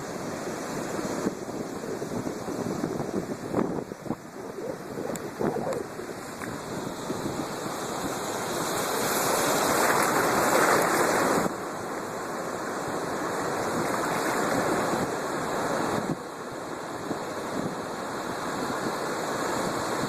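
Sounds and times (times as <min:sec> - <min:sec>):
wind on microphone: 0:00.0 - 0:11.6, 0:13.4 - 0:16.3
storm waves breaking: 0:00.6 - 0:16.2.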